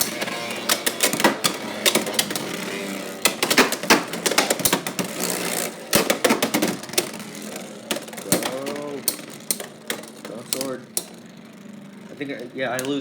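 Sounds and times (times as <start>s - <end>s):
spinning tops whirring: 0.0s - 13.0s
tops clashing clicks and knocks: 0.0s - 13.0s.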